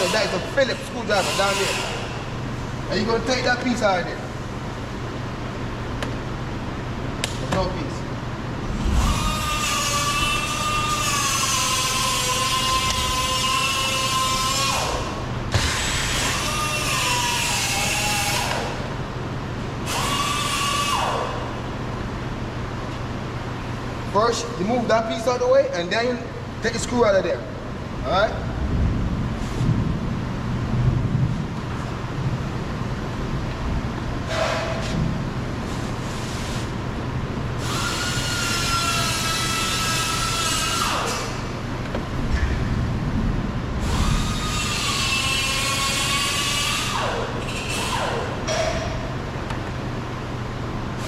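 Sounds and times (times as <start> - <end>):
cordless drill whirring: 37.6 - 41.3, 43.8 - 48.3.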